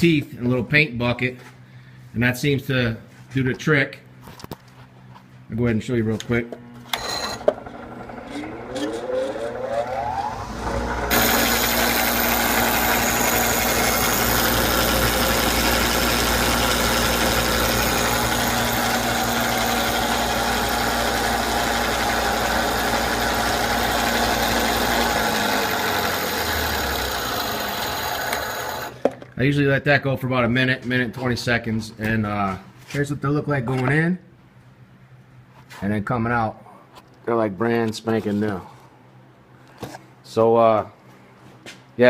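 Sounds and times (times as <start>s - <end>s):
grinder whine: 6.8s - 29.0s
loud steady grinding: 6.9s - 29.0s.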